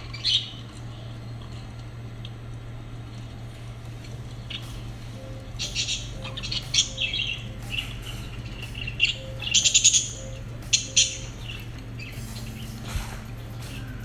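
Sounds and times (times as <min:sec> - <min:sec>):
lovebirds chirping: 0:04.4 - 0:14.0.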